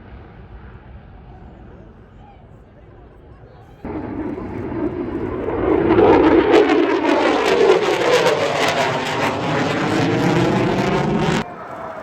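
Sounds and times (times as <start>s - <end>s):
aircraft engine roar: 3.8s - 12.0s.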